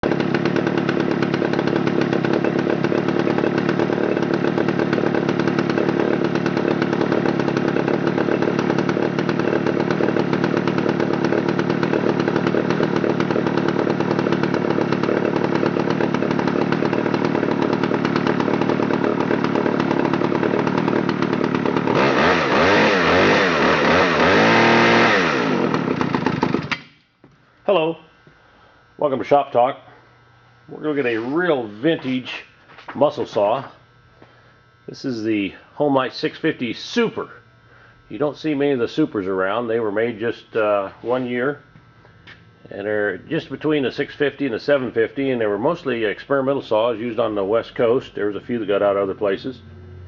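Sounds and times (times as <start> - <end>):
chainsaw engine revving: 0.0 - 26.9.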